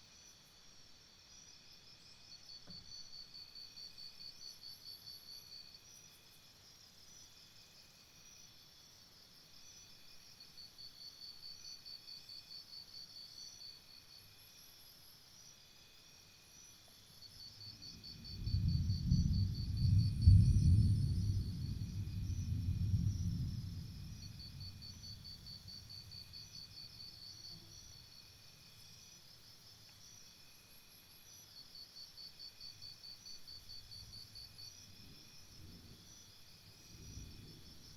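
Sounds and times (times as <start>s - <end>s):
background hum of insects: 0.0s - 37.9s
crickets trilling: 8.0s - 37.9s.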